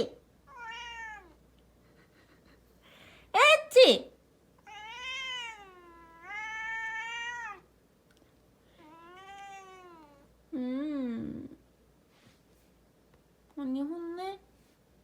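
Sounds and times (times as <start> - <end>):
cat meowing: 0.5 - 1.4, 4.6 - 7.7, 8.8 - 10.3.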